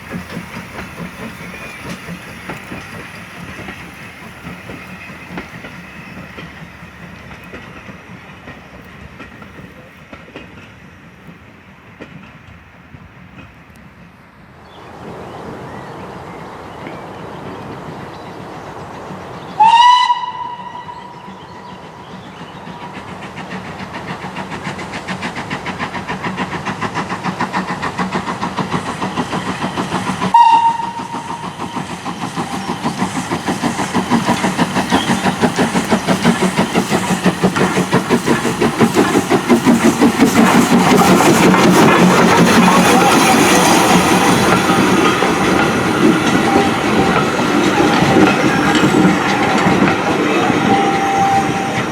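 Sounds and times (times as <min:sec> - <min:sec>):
steam locomotive exhaust beats: 0:00.0 - 0:14.5, 0:17.7 - 0:51.9
steam locomotive whistle: 0:19.6 - 0:21.7, 0:30.2 - 0:33.1, 0:42.8 - 0:51.9
wheels clattering over rail joints: 0:23.0 - 0:51.9.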